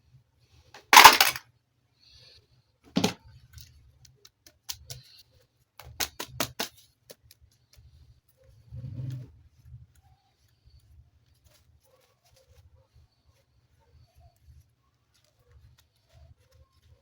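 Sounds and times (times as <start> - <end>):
plastic toys clicking and knocking: 0.8 - 1.4, 3.0 - 3.2, 5.8 - 7.4.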